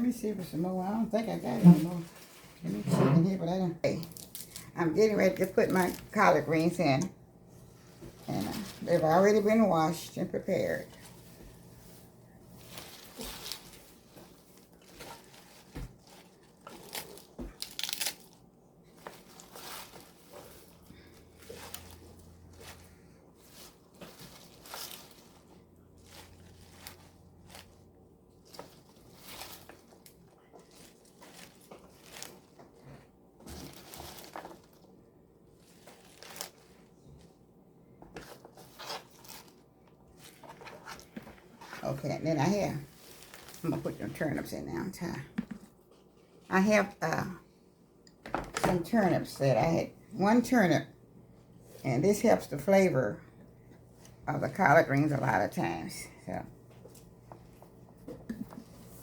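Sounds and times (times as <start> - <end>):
leaves rustling and crunching: 11.0 - 32.8, 33.5 - 34.9, 35.5 - 37.0, 38.3 - 39.6, 42.7 - 44.0.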